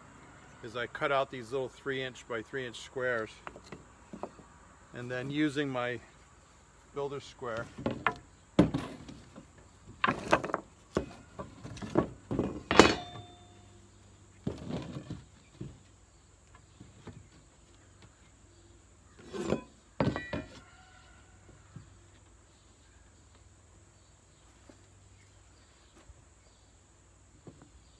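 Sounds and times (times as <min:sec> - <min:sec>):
wooden boards knocking and clattering: 0:03.4 - 0:04.5, 0:07.6 - 0:13.5, 0:14.4 - 0:15.9, 0:19.2 - 0:20.6.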